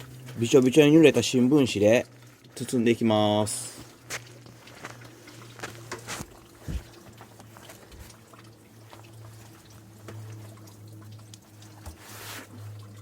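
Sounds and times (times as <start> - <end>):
water trickling and dripping: 0.0 - 13.0
wet paper taps and crinkles: 3.8 - 12.6.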